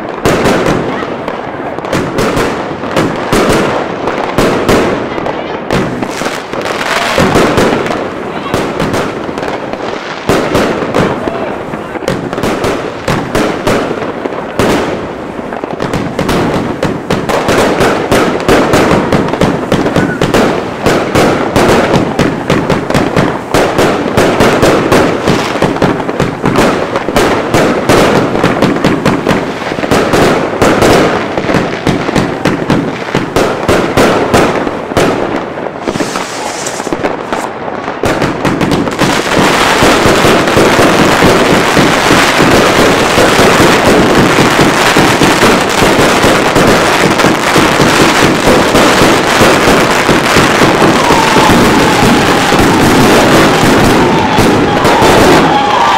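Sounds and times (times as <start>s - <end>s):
fireworks firing: 0.0s - 55.9s.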